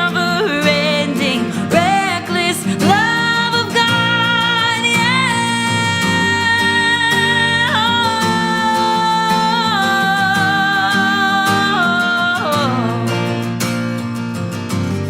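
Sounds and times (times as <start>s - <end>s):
person singing: 0.0s - 13.5s
guitar accompaniment: 0.0s - 15.0s.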